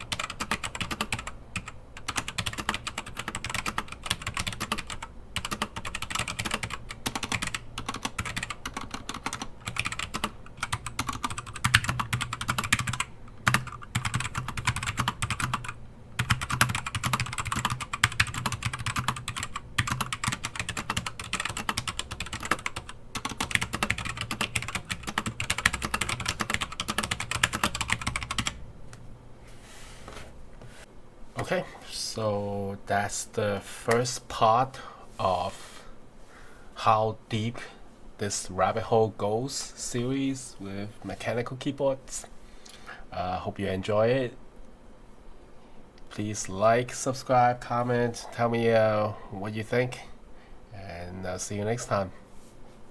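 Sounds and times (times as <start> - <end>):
mechanical keyboard typing: 0.0 - 28.6.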